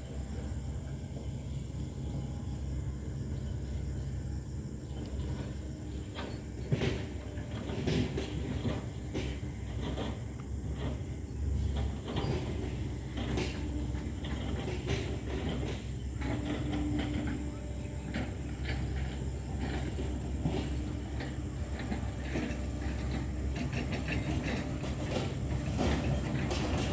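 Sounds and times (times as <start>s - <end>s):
excavator diesel engine: 0.0s - 26.9s.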